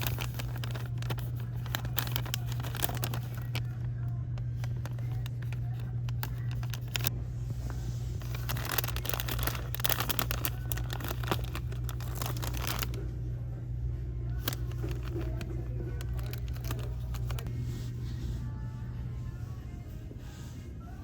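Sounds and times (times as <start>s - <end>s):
scattered clicks and rustling: 0.0s - 3.7s, 14.4s - 17.5s
steady low hum: 0.0s - 21.0s.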